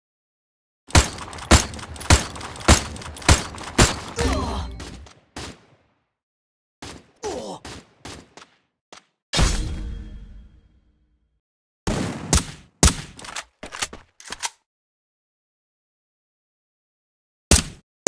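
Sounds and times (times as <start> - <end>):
sharp bangs: 0.9 - 5.8.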